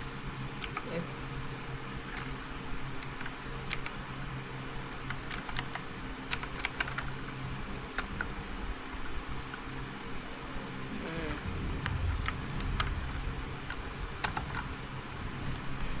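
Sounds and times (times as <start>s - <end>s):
low steady hum: 0.0s - 16.0s
mechanical keyboard clicks: 0.6s - 0.9s, 3.0s - 3.9s, 5.1s - 7.1s, 8.0s - 8.3s, 13.7s - 14.6s.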